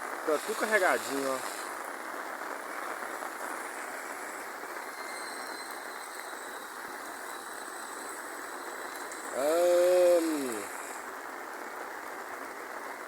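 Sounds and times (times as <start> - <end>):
runoff water running: 0.0 - 12.8
heavy rain falling: 0.0 - 13.0
loud drawn-out call: 9.0 - 11.1.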